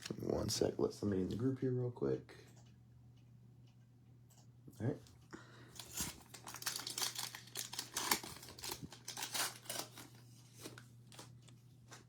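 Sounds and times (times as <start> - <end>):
card wrapper crinkling: 5.8 - 11.4.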